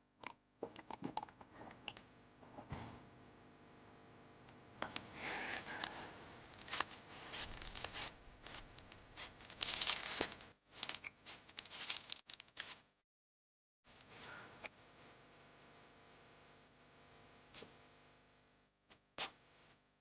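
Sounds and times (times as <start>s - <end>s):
rustling and crinkling: 5.6s - 12.8s.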